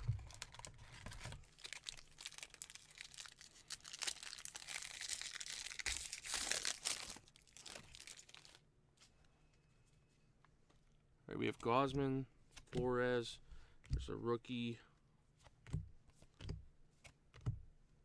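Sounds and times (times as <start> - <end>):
foil wrapper crinkling: 0.0 - 8.6.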